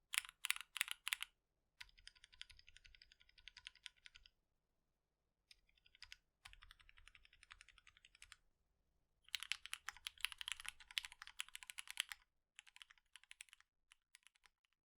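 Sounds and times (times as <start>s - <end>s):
mechanical keyboard typing: 0.1s - 4.3s, 5.6s - 8.4s, 9.3s - 13.6s, 14.2s - 14.6s.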